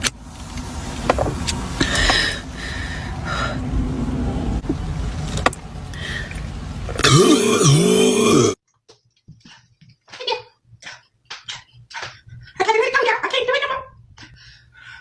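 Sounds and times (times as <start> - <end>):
car cabin rumble: 0.0 - 7.0.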